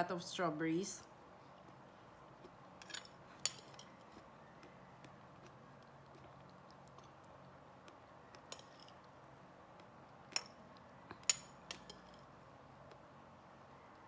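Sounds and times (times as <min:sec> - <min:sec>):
cutlery clinking against a dish: 0:02.8 - 0:04.0.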